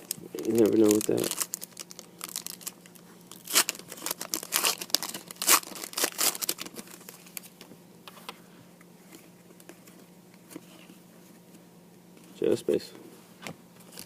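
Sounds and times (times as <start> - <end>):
plastic wrapper tearing and crinkling: 0.0 - 7.5.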